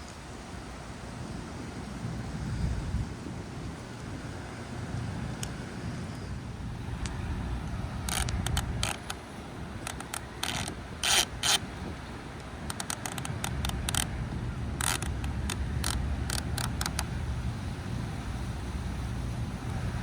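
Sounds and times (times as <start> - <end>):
plastic toy pieces clacking: 12.7 - 14.1.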